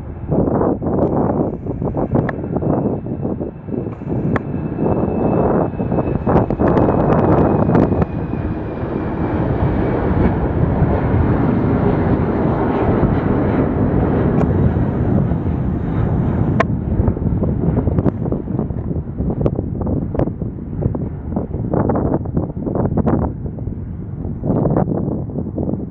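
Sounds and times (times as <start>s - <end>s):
high engine whine falling in pitch: 0.0s - 11.6s
jet engine noise: 0.0s - 25.9s
wind buffeting microphone: 0.0s - 25.9s.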